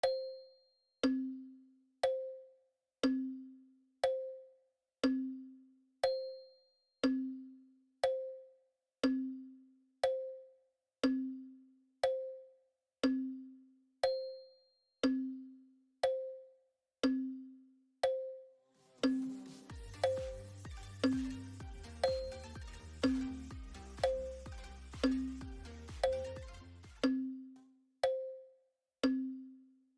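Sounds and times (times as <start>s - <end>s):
stopwatch ticking: 19.0s - 27.3s.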